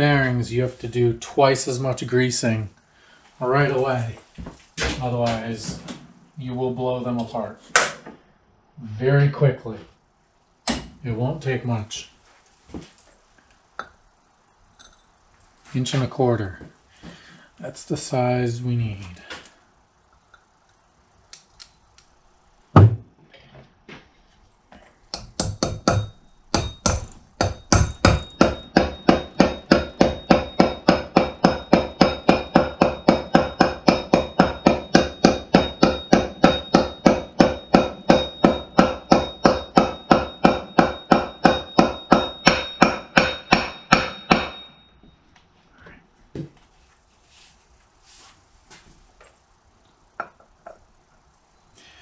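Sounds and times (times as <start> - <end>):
hammer blows on metal: 25.1 - 45.0.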